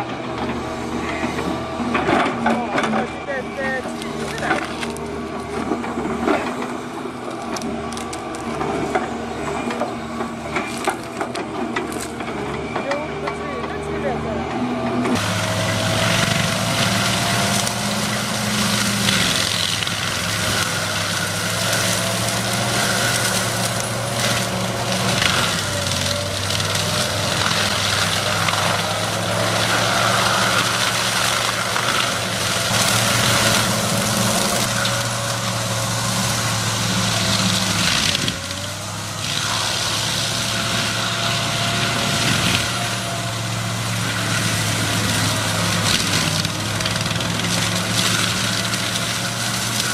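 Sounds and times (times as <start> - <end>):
rough grinding of wood: 0.0 - 14.2, 15.0 - 49.9
excavator engine running: 0.0 - 49.9.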